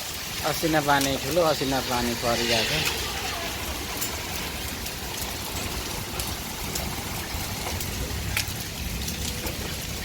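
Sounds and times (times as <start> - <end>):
heavy rain pouring: 0.0 - 10.0.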